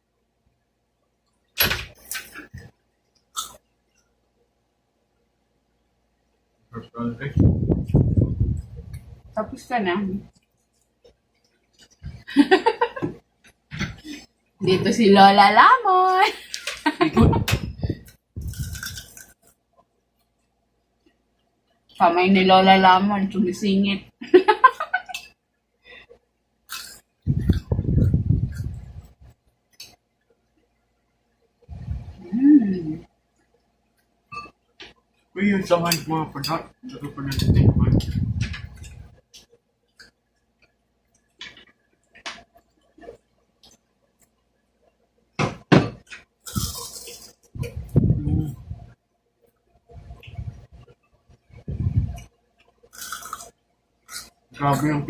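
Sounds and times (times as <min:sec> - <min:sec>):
crunching bites of fried food: 0:18.4 - 0:19.5, 0:52.9 - 0:54.4
crisp crunch of food: 0:18.4 - 0:19.6, 0:46.4 - 0:47.5
muffled chewing: 0:38.0 - 0:44.5.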